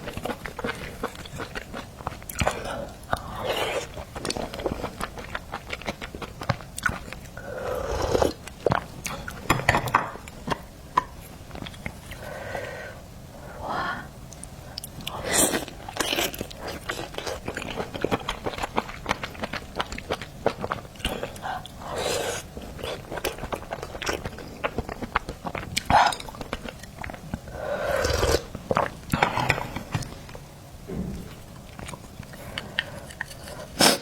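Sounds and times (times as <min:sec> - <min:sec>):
person chewing and biting: 0:03.2 - 0:09.4.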